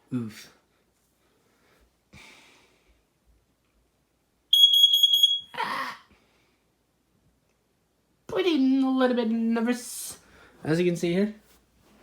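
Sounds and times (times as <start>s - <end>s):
smoke alarm beeping: 4.5s - 5.6s.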